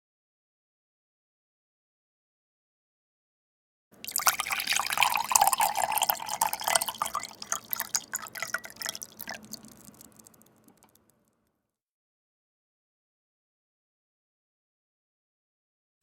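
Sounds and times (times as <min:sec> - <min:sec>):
watery crackling and dripping: 0:04.0 - 0:11.0.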